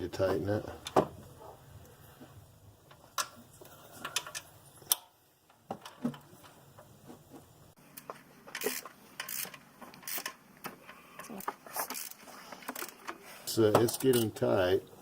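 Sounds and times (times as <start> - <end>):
wrench clicking and scraping: 8.5 - 10.4, 11.2 - 13.1.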